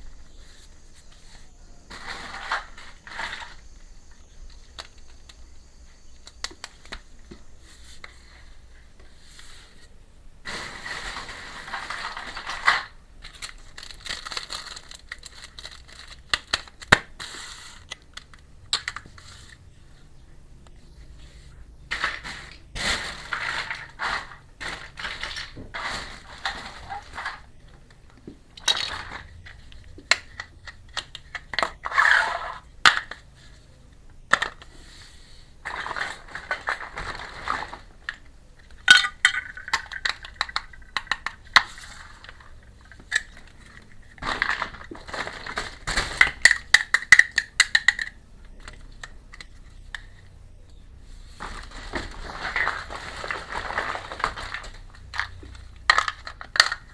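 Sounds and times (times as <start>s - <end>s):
plastic packaging crinkling: 10.5s - 19.6s, 21.9s - 33.2s, 35.6s - 49.1s, 51.4s - 56.9s
toy kitchenware clinking: 38.8s - 41.4s.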